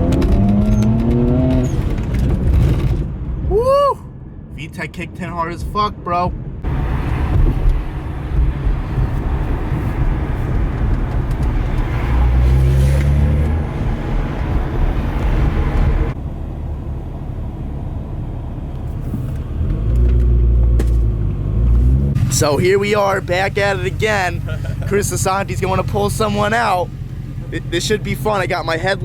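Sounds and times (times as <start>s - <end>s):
road noise: 0.0s - 29.0s
car engine running: 6.6s - 29.0s.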